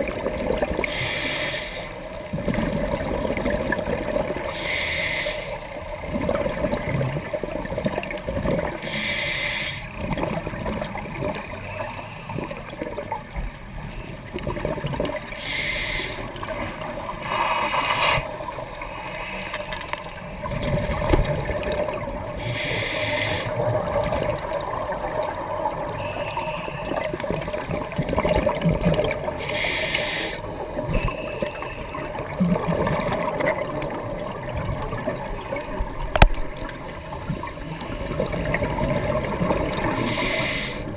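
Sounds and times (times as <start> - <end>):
underwater hum: 0.0 - 40.9
exhaled bubbles rushing: 2.3 - 4.5, 6.0 - 8.8, 14.3 - 15.3, 23.5 - 25.9, 26.8 - 29.4, 32.0 - 40.2.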